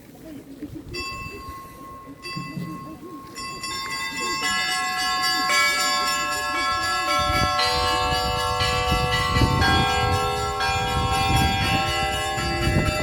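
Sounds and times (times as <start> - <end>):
church bells ringing: 1.0 - 13.0.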